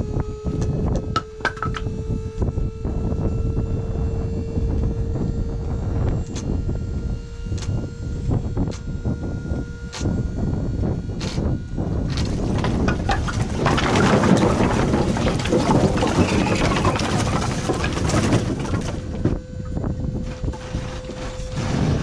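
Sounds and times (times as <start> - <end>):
trailer load rattling: 12.3 - 22.0.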